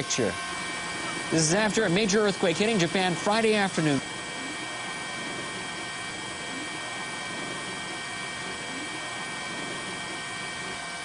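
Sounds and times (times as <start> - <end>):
mechanical hiss with whining tones: 0.0 - 11.0.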